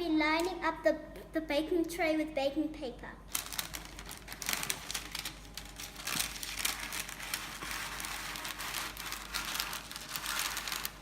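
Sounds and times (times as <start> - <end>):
baking paper crinkling: 3.2 - 11.0.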